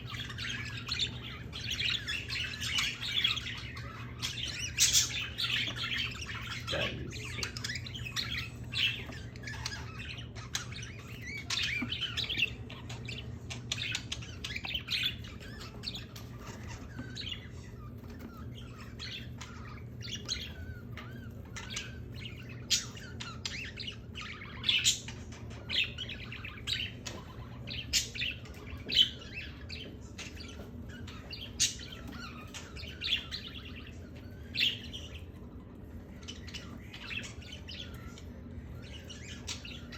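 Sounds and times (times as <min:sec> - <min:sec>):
pet birds chirping and squawking: 0:00.0 - 0:39.9
steady low hum: 0:00.0 - 0:39.9.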